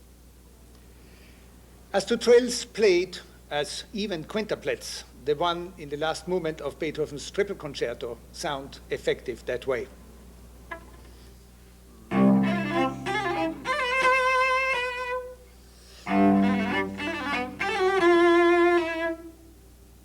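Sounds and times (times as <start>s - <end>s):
solo cello playing trill: 10.7s - 11.0s, 11.9s - 15.4s, 16.0s - 19.5s.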